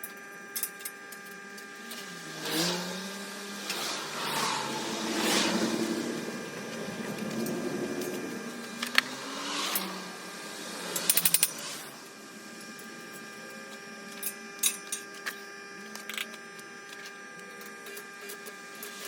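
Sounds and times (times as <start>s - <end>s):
steady hum: 1.2s - 15.7s.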